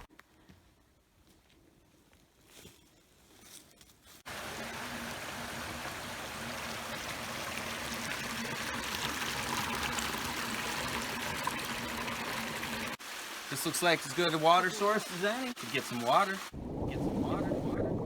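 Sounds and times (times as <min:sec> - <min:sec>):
small stream running: 0:04.2 - 0:16.6.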